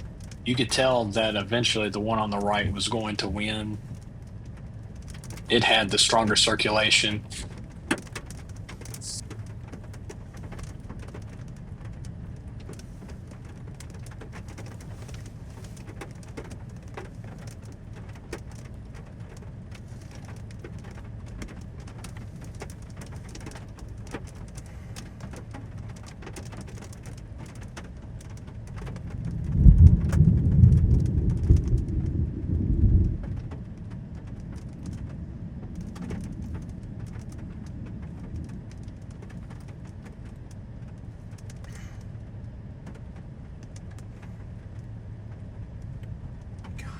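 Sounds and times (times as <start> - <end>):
loud low rumble: 0.0 - 3.9, 29.1 - 35.8
low wind rumble: 0.0 - 46.9.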